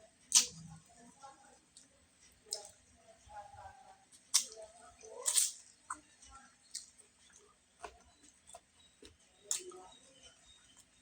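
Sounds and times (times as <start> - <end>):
mouth chewing: 4.1 - 10.0.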